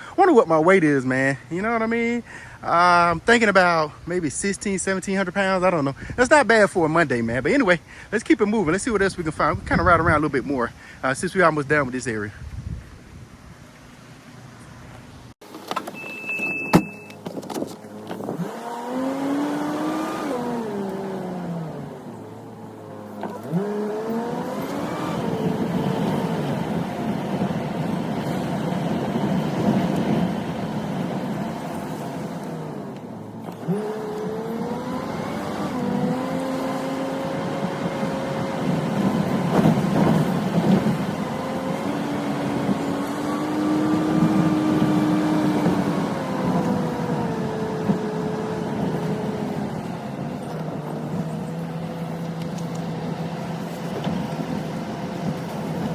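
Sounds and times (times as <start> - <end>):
road noise: 0.0 - 55.9
short beep: 15.9 - 17.2
pickup truck engine accelerating: 17.7 - 55.9.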